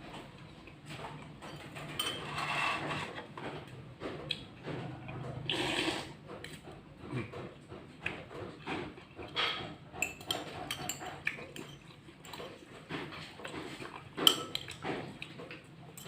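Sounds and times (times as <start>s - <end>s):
cutlery clinking on a plate: 1.4s - 3.2s, 9.2s - 12.6s, 13.5s - 14.9s
chewing and mouth noises: 10.1s - 16.0s.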